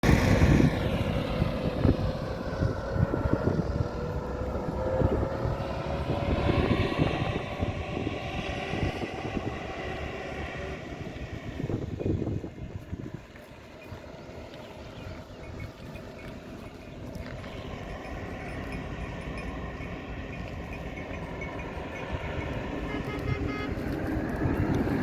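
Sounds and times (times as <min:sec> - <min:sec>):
engine drone: 0:00.0 - 0:25.0
low rumbling: 0:00.0 - 0:25.0.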